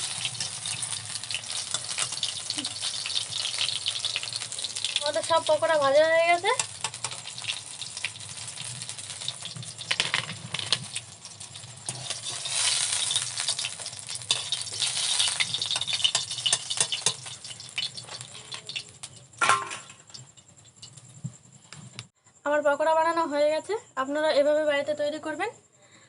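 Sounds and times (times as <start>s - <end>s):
hot oil sizzling: 0.0s - 21.6s
metal utensils clattering: 9.9s - 18.8s, 19.4s - 20.4s.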